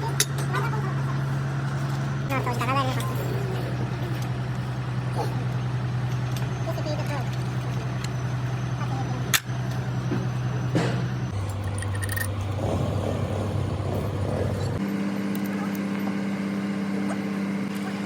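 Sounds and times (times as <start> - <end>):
engine-like machine hum: 0.1 - 18.0.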